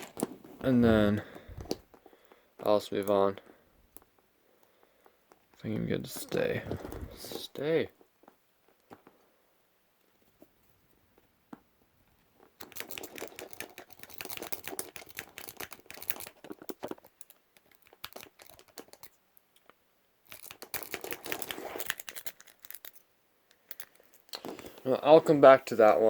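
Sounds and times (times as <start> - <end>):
lock pick clicking and scraping: 12.6 - 19.7, 20.3 - 24.4.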